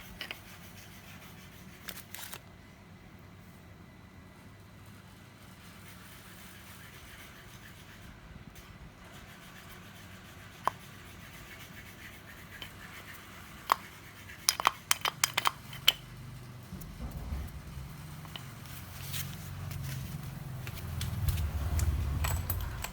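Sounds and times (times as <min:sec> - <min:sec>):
faint scratching and rubbing: 0:04.4 - 0:14.5, 0:16.2 - 0:22.8.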